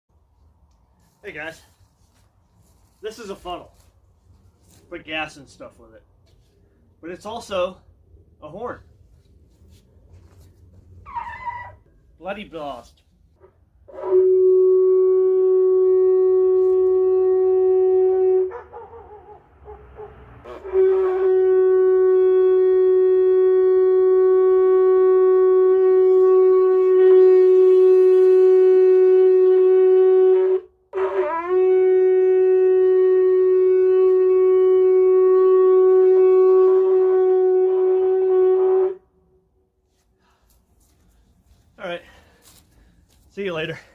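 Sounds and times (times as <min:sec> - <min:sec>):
funnel blown as a horn: 0:13.9 - 0:18.6, 0:20.4 - 0:39.2.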